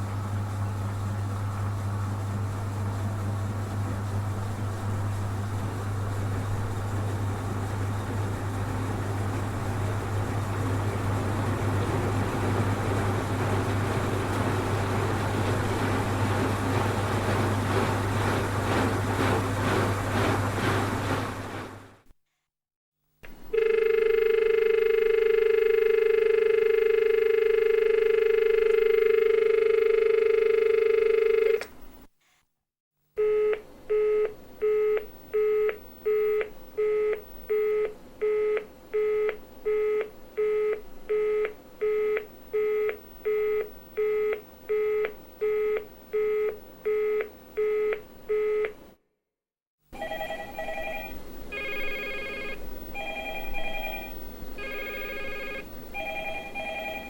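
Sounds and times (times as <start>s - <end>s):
telephone dial tone: 23.3s - 31.7s, 50.0s - 57.0s
telephone busy signal: 23.5s - 31.6s, 33.2s - 48.8s, 50.0s - 57.0s
telephone ringing: 23.5s - 31.6s, 49.9s - 57.0s.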